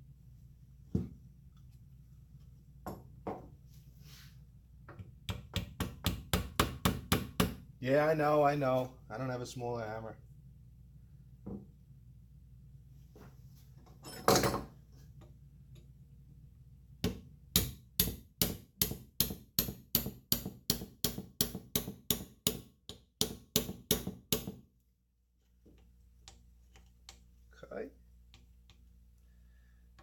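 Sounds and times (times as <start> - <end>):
hammer tapping: 4.9 - 7.6.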